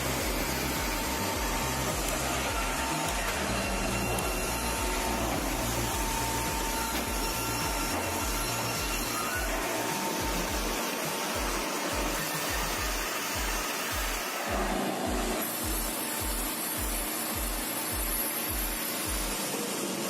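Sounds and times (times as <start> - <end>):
background music with bass line: 0.0 - 10.8
sawmill machinery noise: 0.0 - 20.0.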